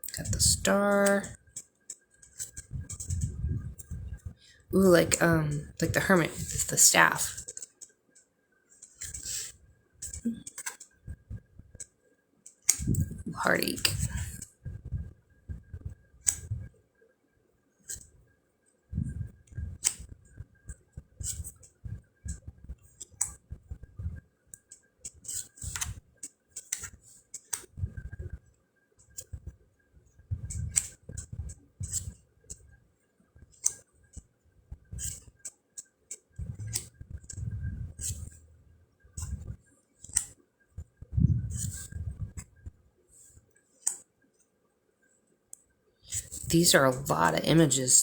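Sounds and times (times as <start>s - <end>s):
cards clicking and snapping: 8.8s - 10.9s.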